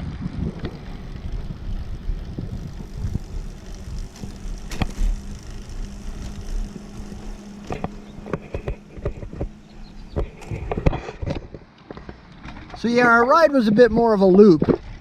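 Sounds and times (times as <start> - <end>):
road and wind rumble: 0.0 - 8.0
faint hum: 0.0 - 13.7.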